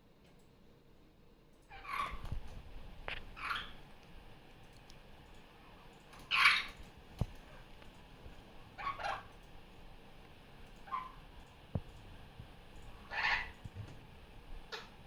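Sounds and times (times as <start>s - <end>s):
parrot harsh calls: 3.4s - 3.8s, 6.3s - 6.8s, 8.8s - 9.3s, 10.8s - 11.2s, 13.0s - 13.6s.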